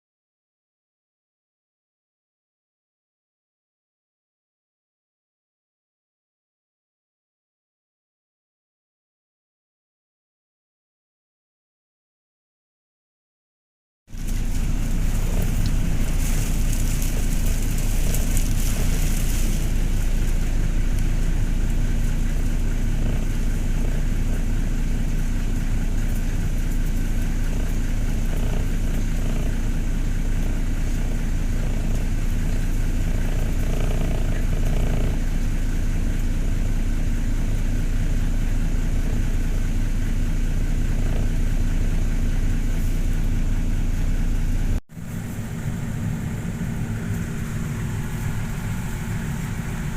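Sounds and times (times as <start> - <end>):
boat engine running: 14.1 - 49.9
driving rain or hail: 14.1 - 49.9.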